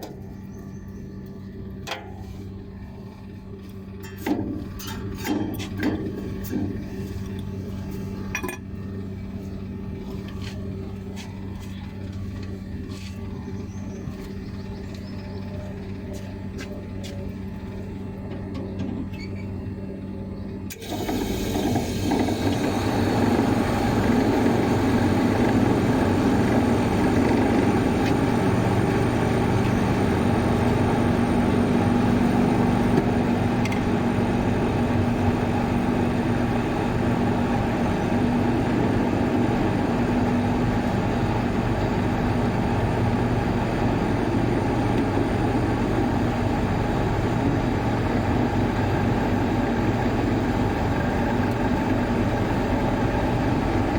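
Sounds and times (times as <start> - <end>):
fan motor humming: 0.0 - 53.9.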